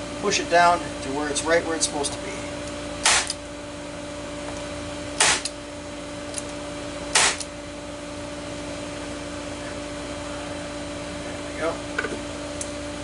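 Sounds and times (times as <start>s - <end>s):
steady hum: 0.0s - 13.0s
nail gun bang and click: 3.0s - 3.4s, 5.2s - 5.5s, 7.2s - 7.5s.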